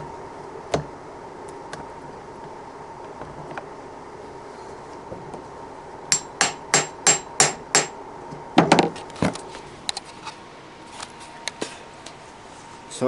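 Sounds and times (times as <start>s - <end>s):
hammer tapping on metal: 6.1s - 8.0s.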